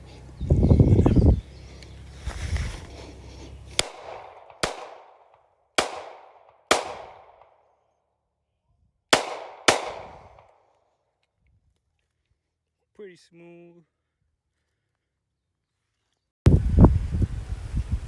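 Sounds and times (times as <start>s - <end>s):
gunshots: 3.8s - 7.6s, 9.1s - 10.5s.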